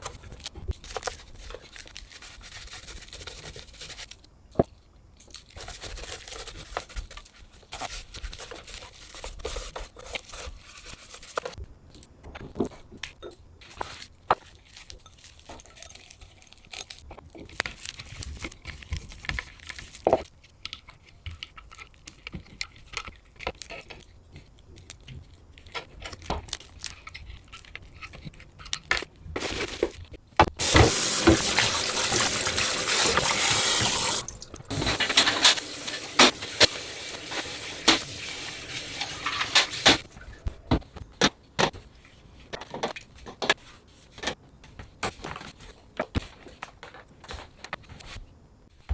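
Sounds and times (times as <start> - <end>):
water tap running: 30.6 - 40.0
clicks and knocks of objects: 38.8 - 48.2.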